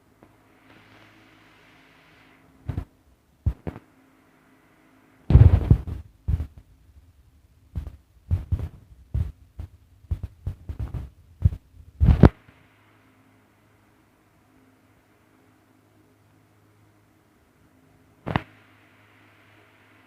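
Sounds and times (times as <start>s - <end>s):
faint low hum: 0.0s - 20.0s
knocks and thumps: 5.3s - 6.6s, 7.8s - 12.3s.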